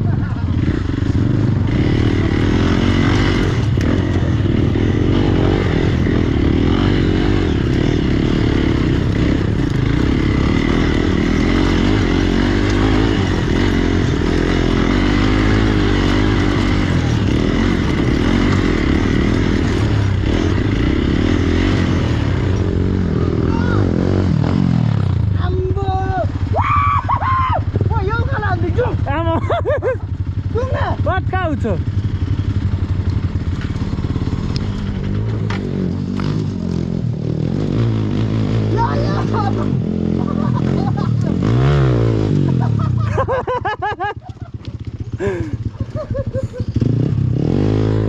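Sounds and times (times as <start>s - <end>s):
motorcycle engine running: 0.0s - 48.0s.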